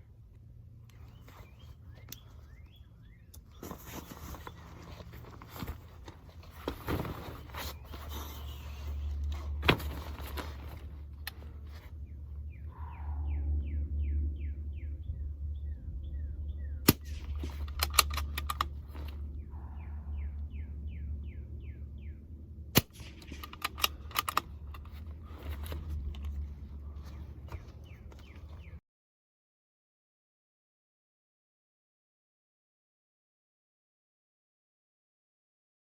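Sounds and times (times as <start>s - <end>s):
low rumble: 3.4s - 28.8s
rifle shots: 16.8s - 18.8s, 22.7s - 24.4s
quick clicks: 16.9s - 19.2s, 22.8s - 26.4s.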